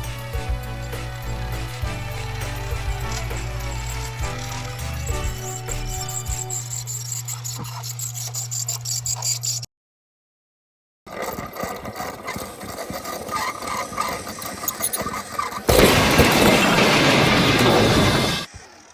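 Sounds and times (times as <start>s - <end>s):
music: 0.0s - 6.5s
mechanical running noise: 0.0s - 9.7s, 11.1s - 18.9s
sudden loud noise: 15.7s - 18.5s.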